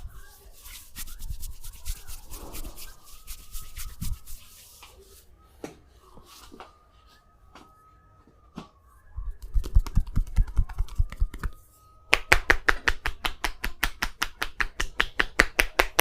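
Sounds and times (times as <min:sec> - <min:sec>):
hands rubbing on skin: 0:00.0 - 0:05.3.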